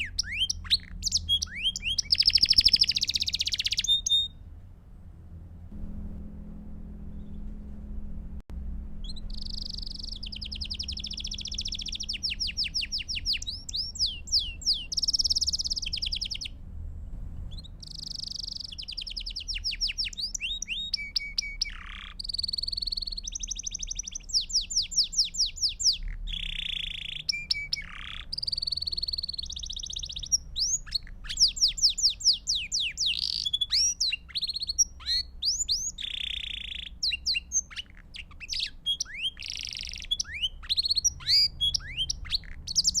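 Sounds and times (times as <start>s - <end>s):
canary singing trills: 0.0s - 4.4s, 9.0s - 16.6s, 17.4s - 43.0s
faint low hum: 0.0s - 43.0s.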